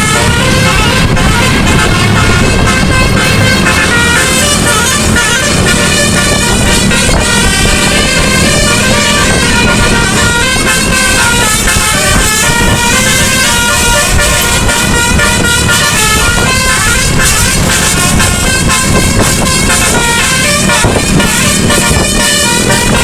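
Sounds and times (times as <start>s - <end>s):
bus musical air horn tune: 0.0s - 23.0s
continuous low rumble: 0.0s - 23.0s.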